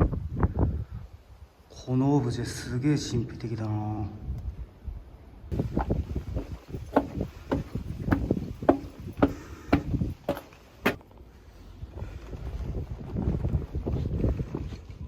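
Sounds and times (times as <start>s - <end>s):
wind rumble on microphone: 0.0s - 1.6s, 4.1s - 10.4s, 11.4s - 15.0s
sharp knocks: 5.5s - 11.0s.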